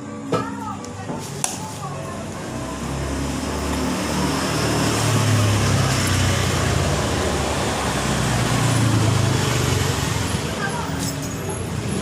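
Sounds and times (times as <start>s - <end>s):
vehicle engine rumbling: 1.0s - 12.0s.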